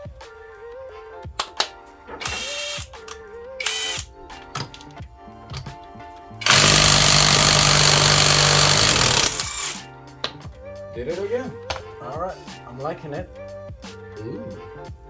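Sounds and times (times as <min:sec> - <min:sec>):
background music: 0:00.0 - 0:15.0
impact driver hammering on bolt: 0:06.4 - 0:10.4.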